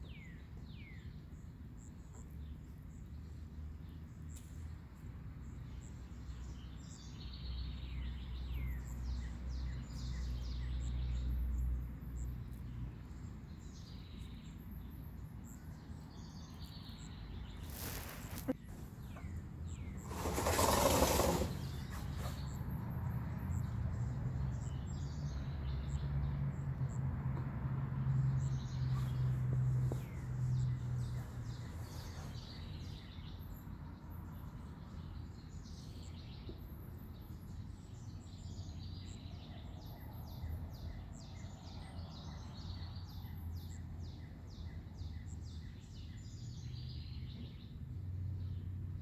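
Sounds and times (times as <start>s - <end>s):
birds chirping: 0.0s - 22.7s.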